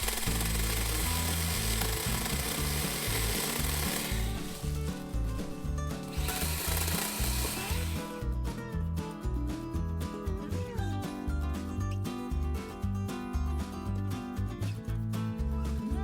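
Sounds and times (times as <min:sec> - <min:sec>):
mini chainsaw cutting brush: 0:00.0 - 0:08.2.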